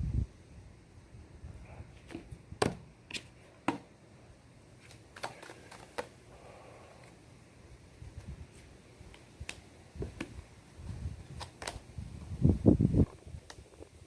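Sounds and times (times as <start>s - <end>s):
cards clicking on a table: 4.8s - 6.2s.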